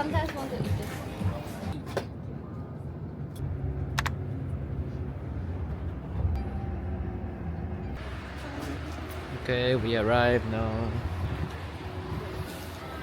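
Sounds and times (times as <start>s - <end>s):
road vehicle driving: 3.1s - 13.0s.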